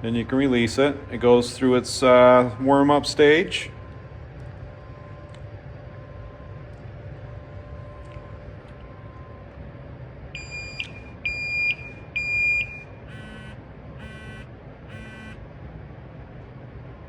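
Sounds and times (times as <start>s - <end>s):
low background hum: 0.0s - 17.0s
high-pitched beeps: 10.4s - 13.5s
short buzzy tones: 10.4s - 15.4s.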